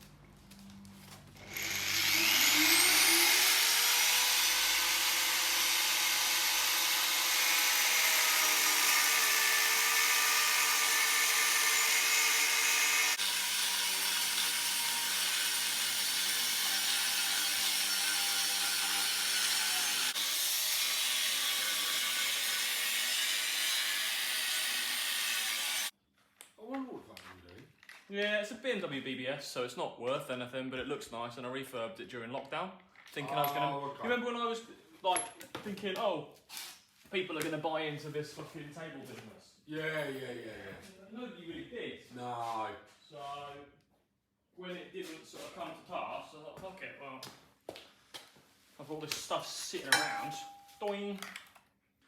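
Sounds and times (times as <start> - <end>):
power saw cutting metal: 1.4 - 25.9.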